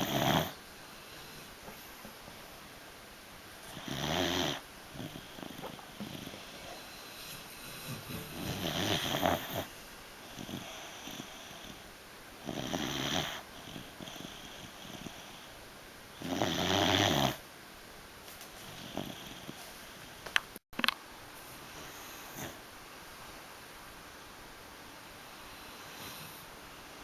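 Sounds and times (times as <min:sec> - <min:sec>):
dog snoring: 0:00.0 - 0:00.6, 0:03.6 - 0:15.5, 0:16.2 - 0:17.4, 0:18.6 - 0:20.0, 0:21.8 - 0:22.6, 0:25.5 - 0:26.5
dog breathing: 0:03.6 - 0:11.8, 0:18.6 - 0:20.1.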